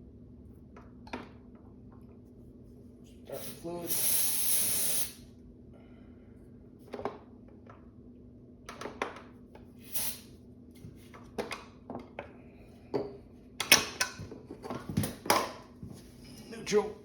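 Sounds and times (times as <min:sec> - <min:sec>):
short hiss: 0:03.4 - 0:05.2, 0:09.8 - 0:10.3.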